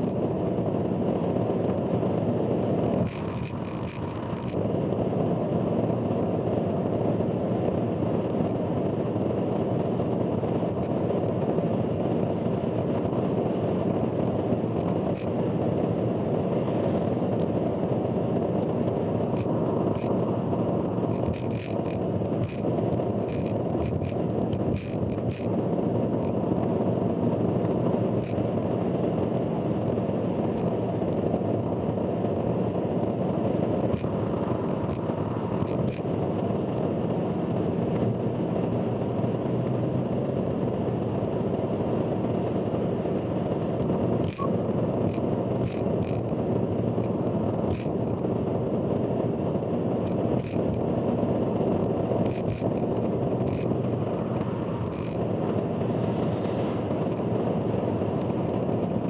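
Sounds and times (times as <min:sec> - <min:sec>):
sharp ticks and clicks: 0:00.0 - 0:05.0, 0:07.6 - 0:09.4, 0:10.3 - 0:15.4, 0:16.5 - 0:17.5, 0:18.6 - 0:26.7, 0:27.5 - 0:37.2, 0:43.7 - 0:48.4, 0:49.9 - 0:51.0, 0:51.6 - 0:59.0
road and cabin noise: 0:00.0 - 0:59.0.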